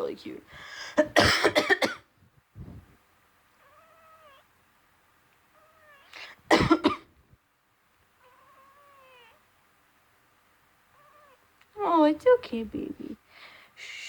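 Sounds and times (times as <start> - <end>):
woman coughing: 1.0 - 2.1, 6.5 - 7.0
cat meowing: 3.6 - 4.5, 5.5 - 6.2, 8.2 - 9.5, 10.9 - 11.5.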